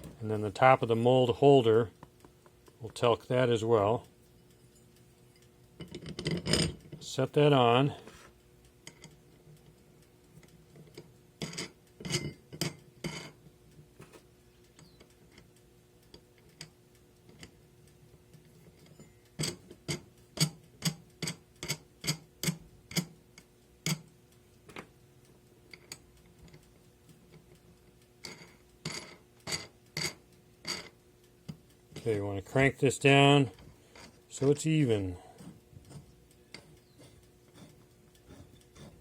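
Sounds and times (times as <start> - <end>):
faint steady hum: 0.0 - 39.0
sharp metallic clicks and taps: 1.9 - 4.6, 14.6 - 39.0.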